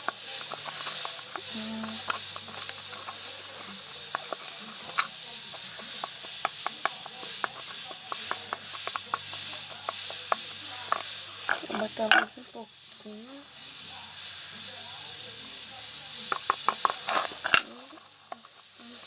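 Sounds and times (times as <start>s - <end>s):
spoon scraping against a pot: 0.0s - 12.5s, 16.2s - 19.0s
steady hiss: 0.0s - 19.0s.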